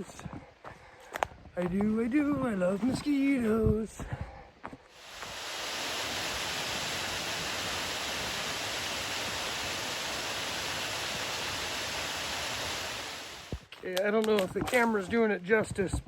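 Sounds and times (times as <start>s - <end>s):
waterfall rushing: 5.0s - 13.7s.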